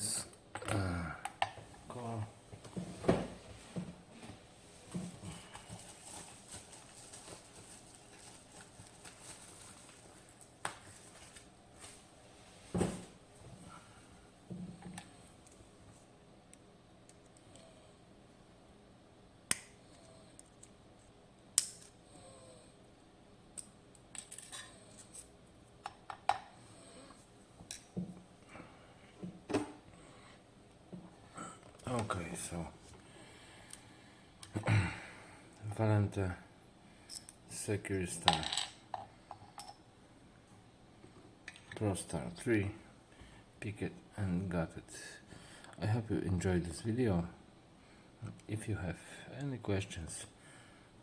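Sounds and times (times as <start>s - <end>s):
metal parts clicking and clinking: 23.6s - 25.3s.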